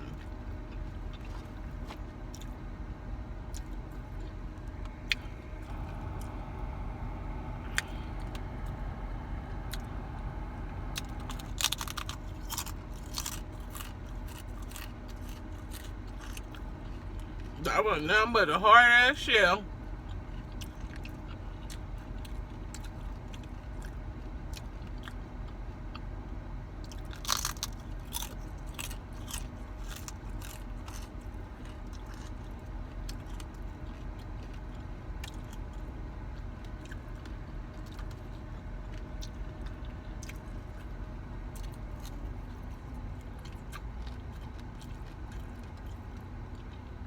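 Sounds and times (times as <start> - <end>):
car air conditioning hum: 0.0 - 47.0
crunching and chewing taco shell: 0.0 - 47.0.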